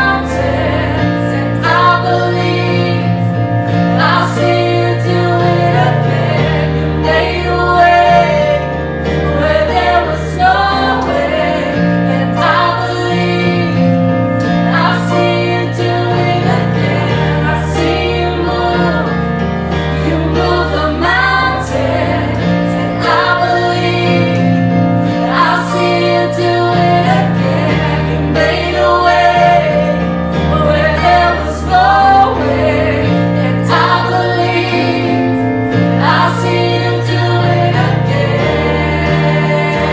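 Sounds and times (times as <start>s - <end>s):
instrumental backing: 0.0s - 39.9s
voices singing gospel song: 0.0s - 39.9s.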